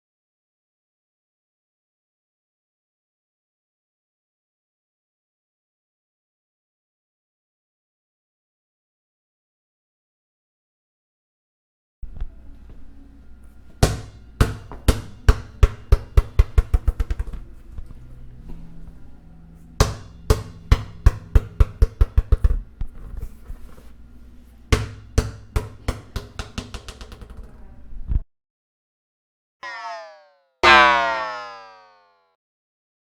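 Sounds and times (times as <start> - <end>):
ball bouncing: 13.4 - 18.0, 19.8 - 23.8, 24.7 - 27.9.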